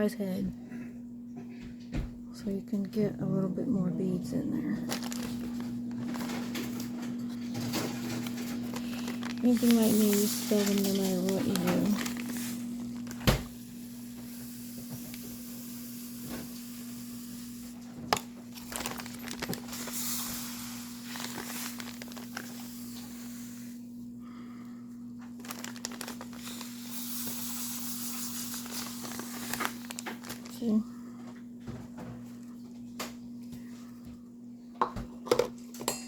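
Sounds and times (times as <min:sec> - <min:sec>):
plastic bag crinkling: 0:04.5 - 0:15.4, 0:17.9 - 0:23.7, 0:25.2 - 0:30.9.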